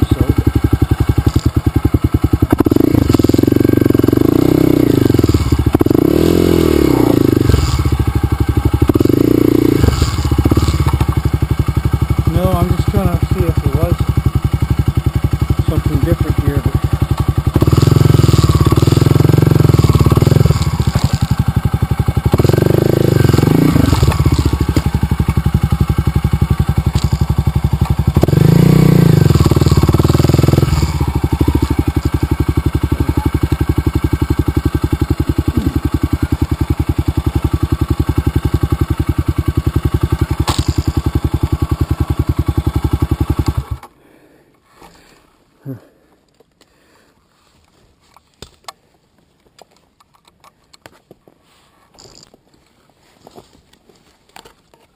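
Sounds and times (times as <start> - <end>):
dirt bike engine revving: 0.0 - 43.8.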